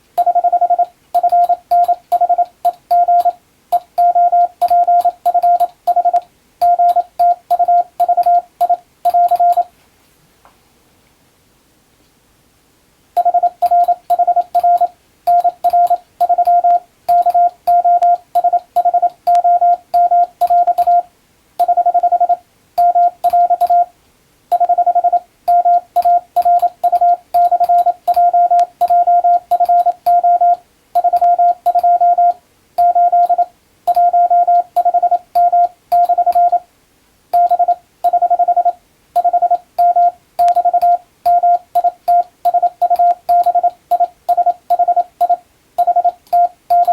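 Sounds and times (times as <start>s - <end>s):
faint keying clicks: 0.2s - 9.7s, 25.5s - 32.0s, 37.4s - 46.9s
morse code beeps: 0.2s - 9.7s, 13.2s - 23.9s, 24.5s - 36.6s, 37.4s - 46.9s.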